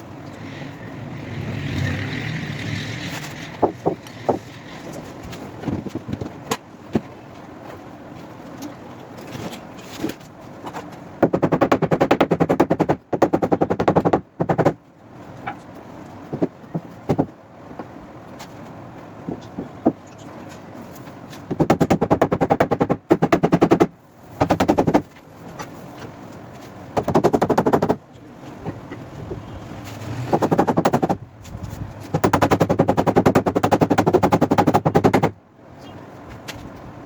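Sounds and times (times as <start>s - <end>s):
rapid hammering on sheet metal: 11.2s - 14.8s, 16.3s - 17.4s, 21.5s - 25.1s, 27.0s - 28.0s, 30.3s - 31.2s, 32.1s - 35.4s.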